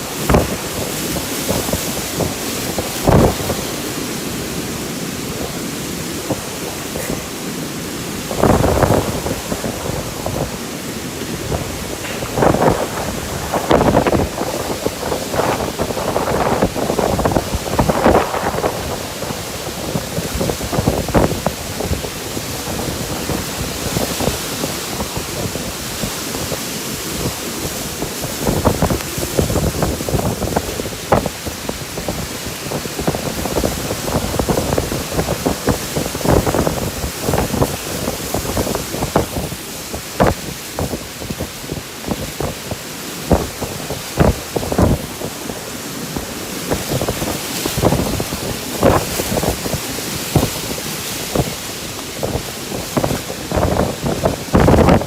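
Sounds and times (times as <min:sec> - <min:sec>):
rain hiss: 0:00.0 - 0:55.0
storm wind buffeting microphone: 0:00.0 - 0:55.0.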